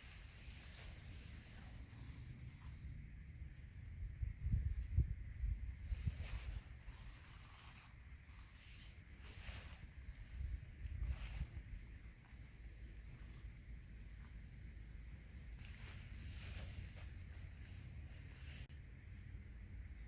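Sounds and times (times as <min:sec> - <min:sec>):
rustling: 0:00.0 - 0:03.8, 0:05.7 - 0:12.5, 0:15.6 - 0:18.7
insect chirping: 0:00.0 - 0:20.0.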